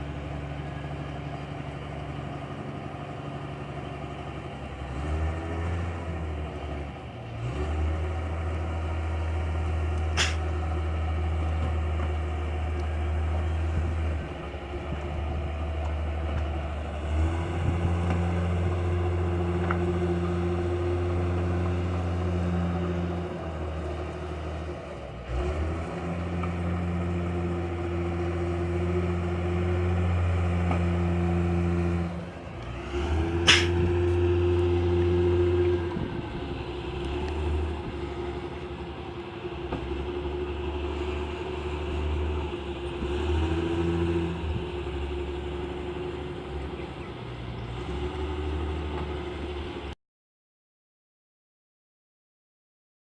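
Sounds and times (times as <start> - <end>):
sharp click: 10.1 - 10.4, 33.5 - 33.8.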